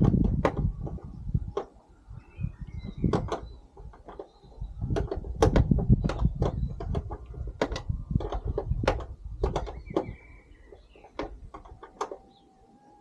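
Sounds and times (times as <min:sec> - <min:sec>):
car door knocks and clunks: 0:00.0 - 0:01.7, 0:04.9 - 0:10.2.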